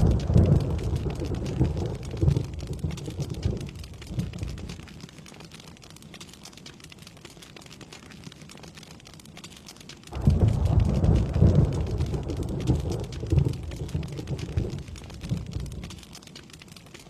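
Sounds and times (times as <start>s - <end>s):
thunder rumbling: 0.0s - 4.8s, 10.1s - 16.1s
rain pattering: 0.0s - 17.0s.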